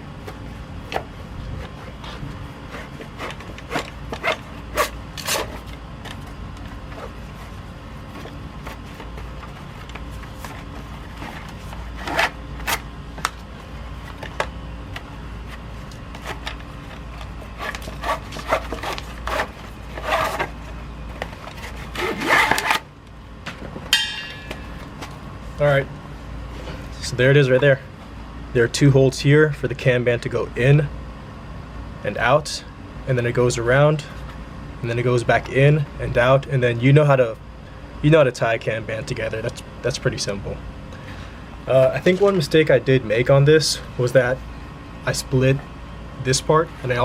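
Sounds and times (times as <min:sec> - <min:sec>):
strap rubbing and scraping: 0:00.0 - 0:23.0
steady low hum: 0:00.0 - 0:47.0.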